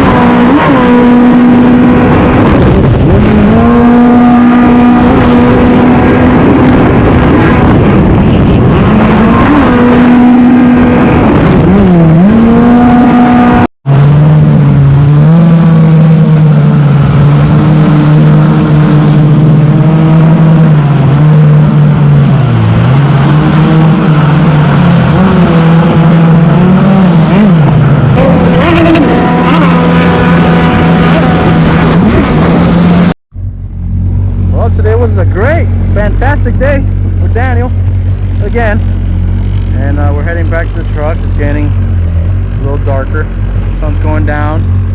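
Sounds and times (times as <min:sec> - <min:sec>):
jet ski engine running hard: 0:00.0 - 0:33.1, 0:33.7 - 0:44.9
water rushing: 0:00.0 - 0:33.2
wind: 0:00.0 - 0:44.9.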